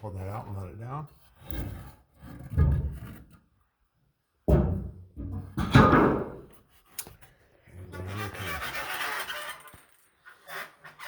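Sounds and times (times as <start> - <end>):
wooden boards knocking and scraping: 4.5 - 6.6.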